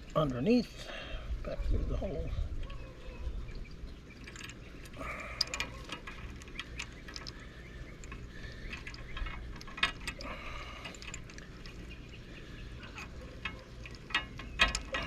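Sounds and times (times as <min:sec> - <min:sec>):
safety wire clicking and ticking: 0:04.2 - 0:15.0.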